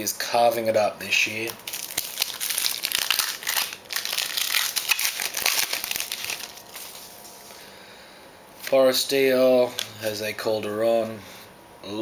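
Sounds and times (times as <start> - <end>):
wrapper crinkling and rustling: 1.4 - 7.4.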